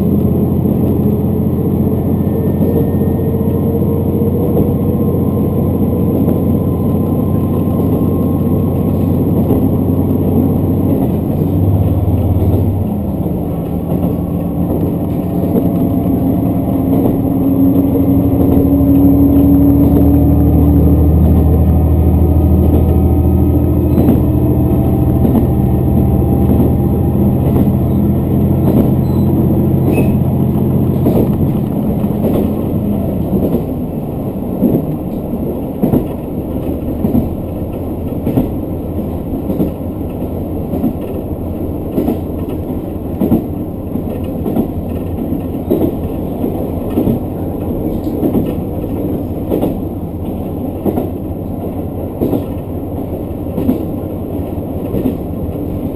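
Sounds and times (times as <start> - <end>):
diesel railcar engine running: 0.0 - 55.9
train running rumble: 0.0 - 55.9
wheels clicking over rail joints: 23.8 - 30.3, 30.9 - 55.9.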